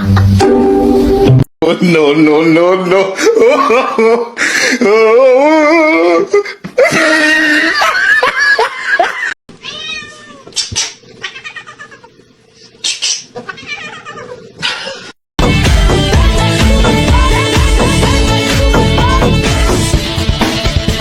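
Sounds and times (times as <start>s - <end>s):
music: 0.0s - 1.5s, 15.4s - 21.0s
cats yowling and meowing: 9.6s - 10.6s, 13.4s - 14.5s.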